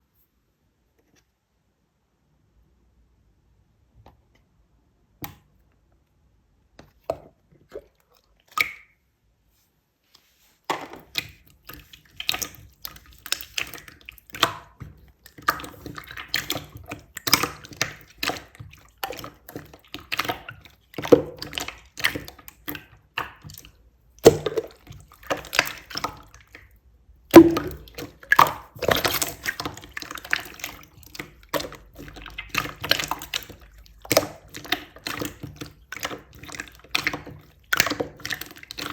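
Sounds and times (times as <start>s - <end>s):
slime squishing and popping: 27.3s - 38.9s.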